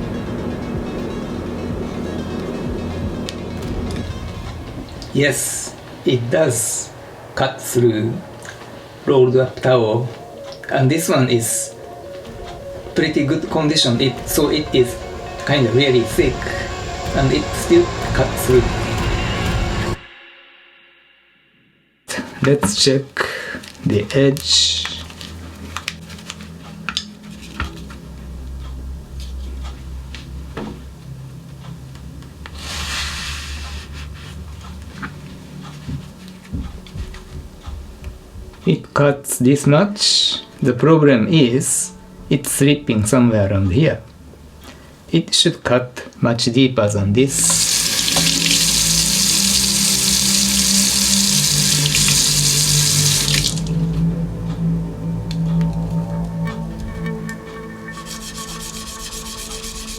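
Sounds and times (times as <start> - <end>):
steady low hum: 0.0 - 21.4, 24.4 - 38.7, 47.2 - 59.9
tap water running into sink: 47.4 - 53.7.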